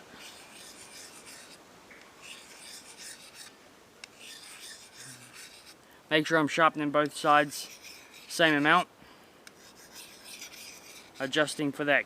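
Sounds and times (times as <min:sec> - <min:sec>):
knife rasping on whetstone: 0:00.2 - 0:01.6, 0:02.2 - 0:03.5, 0:04.1 - 0:05.8, 0:07.4 - 0:08.8, 0:09.6 - 0:11.4.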